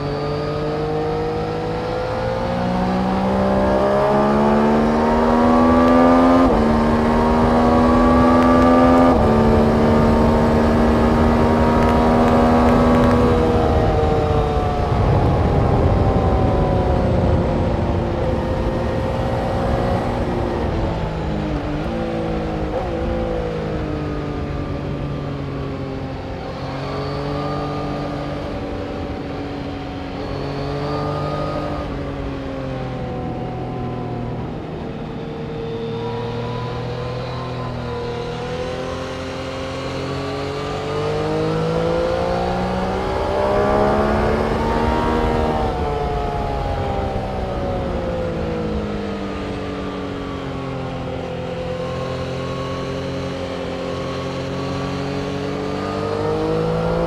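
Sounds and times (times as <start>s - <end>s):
racing engines slowing and accelerating: 0.0s - 57.0s.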